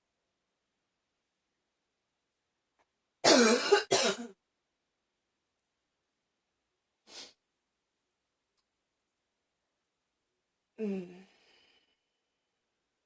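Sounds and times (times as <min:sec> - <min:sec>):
woman coughing: 0:03.2 - 0:04.4
faint breath: 0:11.1 - 0:12.4.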